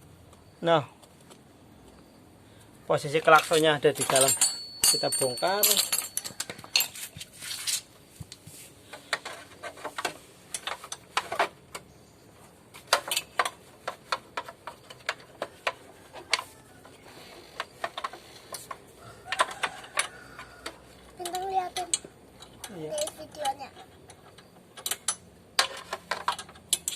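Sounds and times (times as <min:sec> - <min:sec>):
hand tools clinking on metal: 0:03.0 - 0:07.7, 0:12.9 - 0:26.9.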